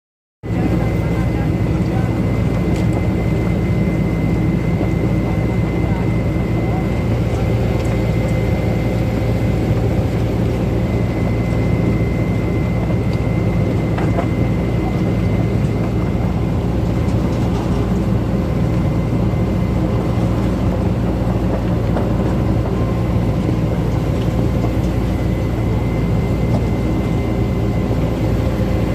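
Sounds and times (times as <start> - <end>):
diesel engine running: 0.5 - 28.9.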